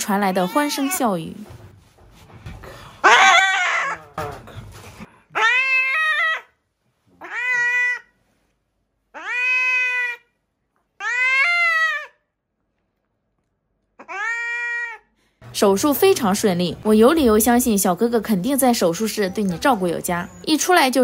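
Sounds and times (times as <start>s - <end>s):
cat meowing: 0.1s - 1.2s, 5.4s - 6.5s, 7.2s - 8.1s, 9.1s - 10.3s, 11.0s - 12.2s, 14.0s - 15.0s.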